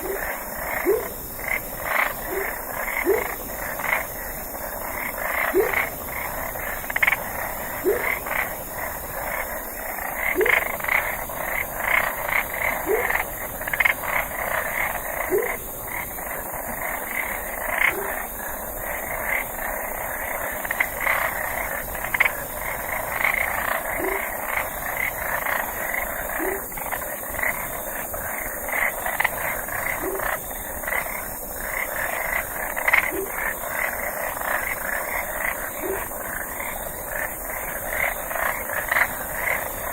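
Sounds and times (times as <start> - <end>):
upward-swooping frog call: 0.0 - 4.1, 5.0 - 9.5, 10.1 - 15.9, 23.1 - 24.6, 25.2 - 26.8, 29.9 - 30.4
frogs croaking: 0.0 - 39.9.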